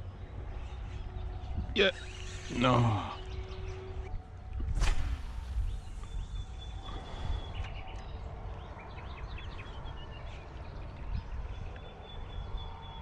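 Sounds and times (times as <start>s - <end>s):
small birds chirping: 0.0s - 4.2s, 5.0s - 13.0s
low outdoor rumble: 0.0s - 13.0s.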